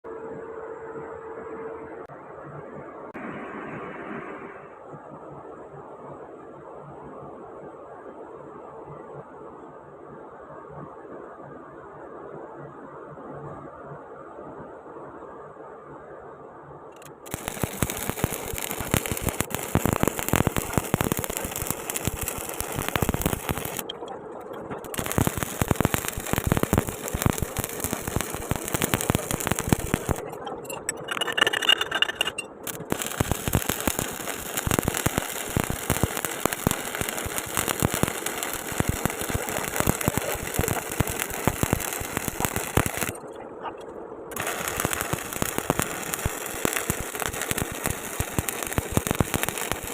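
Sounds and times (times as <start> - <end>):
welding arc crackling: 16.9 - 49.9.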